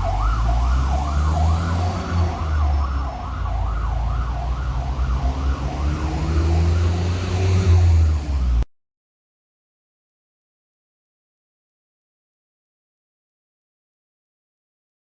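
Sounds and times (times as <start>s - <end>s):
fire engine siren yelping: 0.0s - 8.2s
truck engine rumble: 0.0s - 8.6s.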